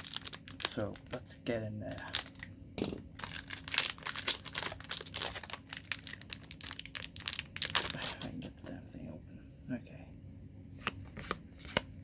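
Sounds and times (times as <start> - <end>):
foil wrapper crinkling and tearing: 0.0 - 1.2, 1.9 - 8.6.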